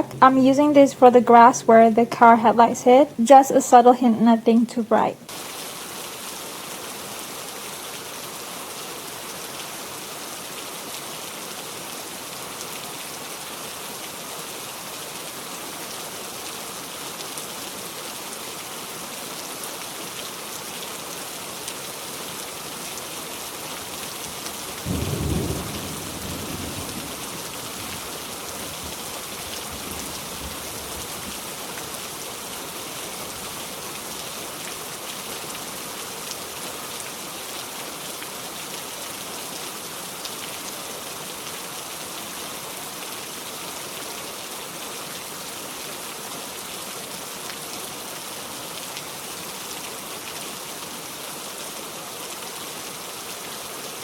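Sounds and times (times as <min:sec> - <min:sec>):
steady rain: 0:05.2 - 0:54.0
low rumble of thunder: 0:24.8 - 0:31.3.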